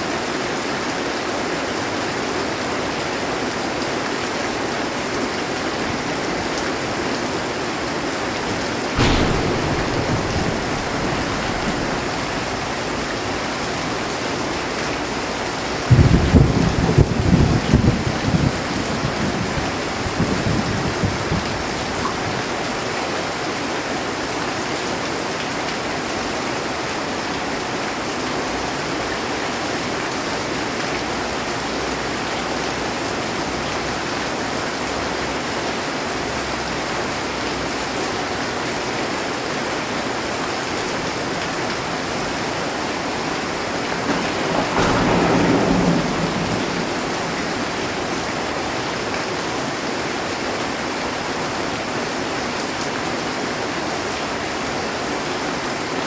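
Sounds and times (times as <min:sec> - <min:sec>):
heavy rain on metal roof: 0:00.0 - 0:56.0
thunder rumbling: 0:08.4 - 0:22.4, 0:41.0 - 0:50.6.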